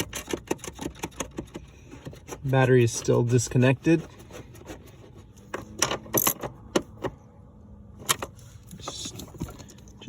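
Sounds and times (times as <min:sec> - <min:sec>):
tools and parts clicking: 0:00.0 - 0:02.4, 0:05.4 - 0:07.1.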